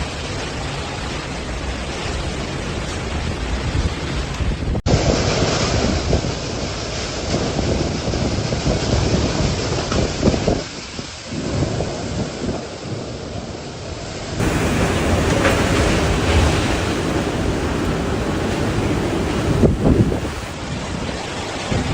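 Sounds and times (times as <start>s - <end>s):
wind buffeting microphone: 14.4s - 20.6s
wind gusting and rushing: 14.4s - 20.6s.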